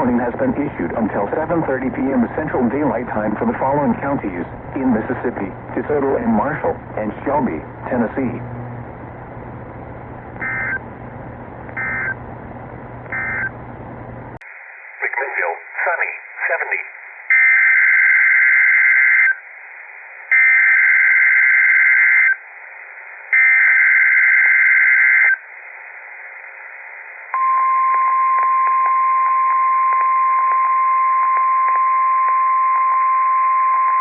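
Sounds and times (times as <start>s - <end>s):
steady warning alarm tone: 10.4s - 10.8s, 11.8s - 12.2s, 13.1s - 13.6s, 17.3s - 19.4s, 20.3s - 22.4s, 23.3s - 25.4s.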